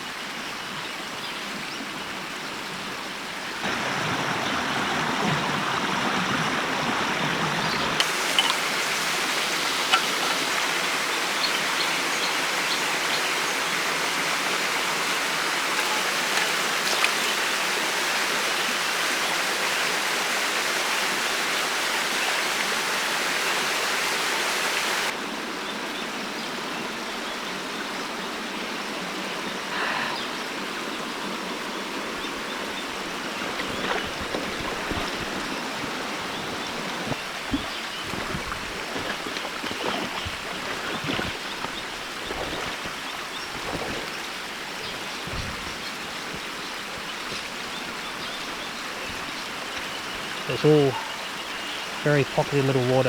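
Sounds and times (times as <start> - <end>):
river rushing over rocks: 3.6 - 25.2.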